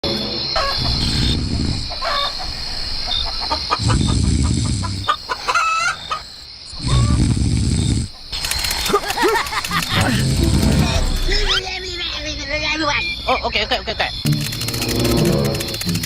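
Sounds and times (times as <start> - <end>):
chickens clucking: 0.6 - 10.8.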